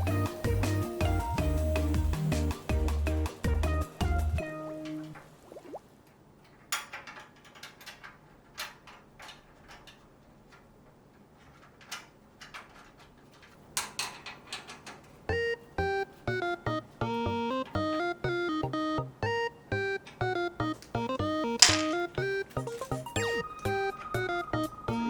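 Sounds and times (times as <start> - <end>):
background music with keyboard: 0.0 - 5.5, 15.3 - 25.0.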